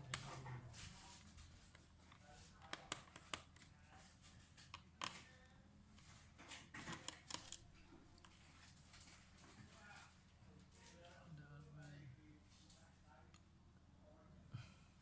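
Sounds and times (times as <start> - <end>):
clicks and taps of small parts: 1.7 - 3.7, 6.5 - 7.6.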